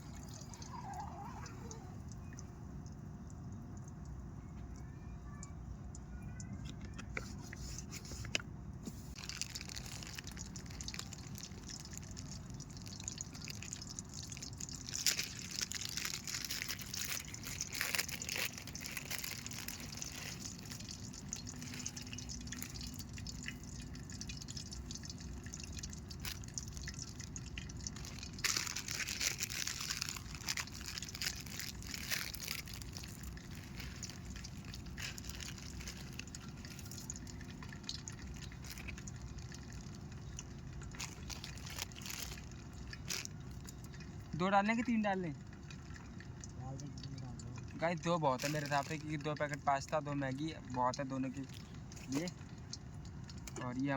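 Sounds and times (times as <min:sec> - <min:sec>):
oil crackling in a pan: 0:00.0 - 0:08.4, 0:09.1 - 0:53.9
liquid sounds: 0:00.0 - 0:53.9.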